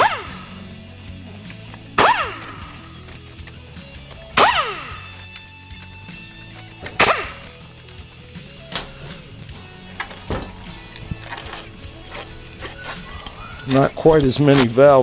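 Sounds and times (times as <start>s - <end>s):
power tool bursts with falling whine: 0.0s - 0.6s, 2.0s - 3.1s, 4.4s - 5.3s, 7.0s - 7.6s.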